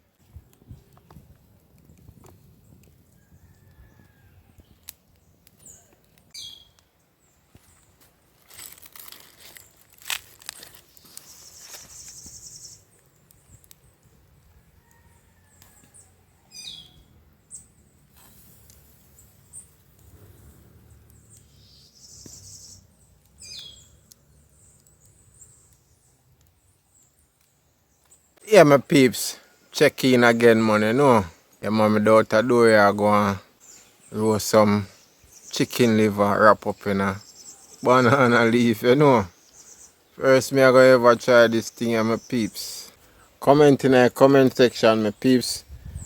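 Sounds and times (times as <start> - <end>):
high falling bird calls: 2.6 - 8.0, 8.6 - 14.1, 14.8 - 28.4, 30.1 - 46.0
buzzy bird trills: 10.9 - 12.8, 20.4 - 22.8.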